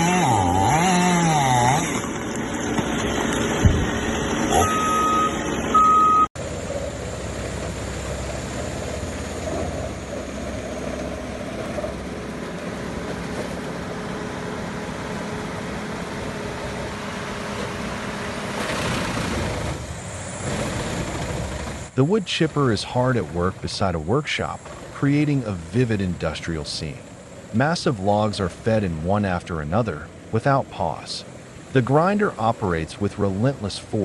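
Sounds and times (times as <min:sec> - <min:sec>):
heavy machinery engine running: 0:00.0 - 0:34.0
short high beeps: 0:04.5 - 0:06.3.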